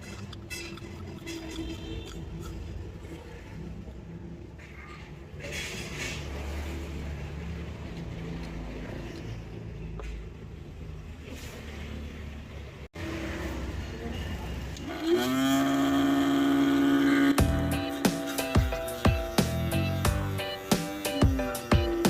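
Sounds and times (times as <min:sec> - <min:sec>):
music with held notes: 0:17.0 - 0:22.0.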